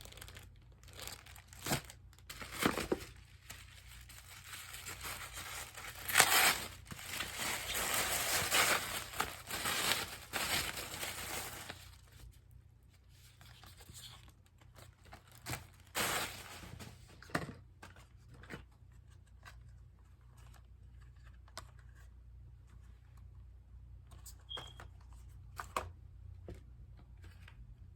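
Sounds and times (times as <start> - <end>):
packaging tearing and crinkling: 0.0 - 12.2, 15.1 - 16.8.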